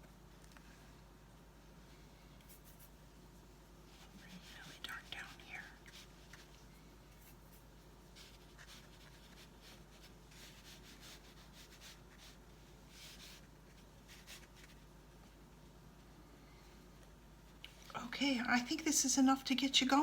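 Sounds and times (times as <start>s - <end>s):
brush swishing on paper: 2.4s - 15.4s.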